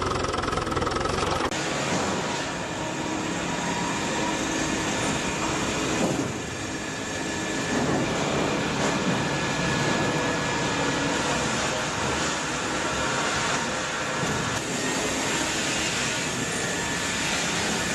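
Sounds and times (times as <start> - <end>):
sawmill machinery running: 0.0 - 17.9.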